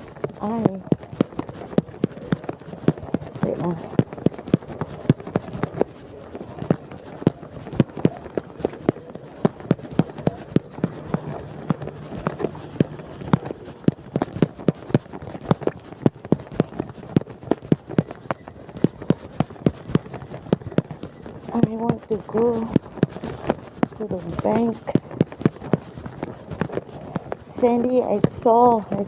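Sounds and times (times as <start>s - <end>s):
footsteps on hard floor: 9.4s - 27.4s.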